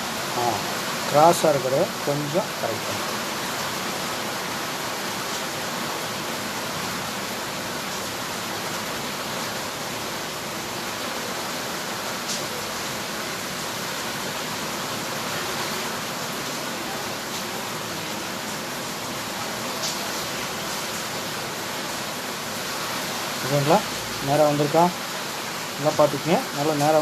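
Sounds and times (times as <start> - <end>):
steady hiss: 0.0 - 3.8, 19.7 - 27.0.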